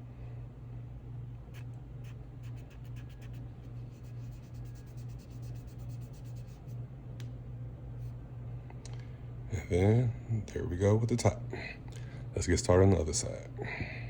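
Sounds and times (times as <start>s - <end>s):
steady low hum: 0.0s - 14.0s
click: 7.2s - 7.4s.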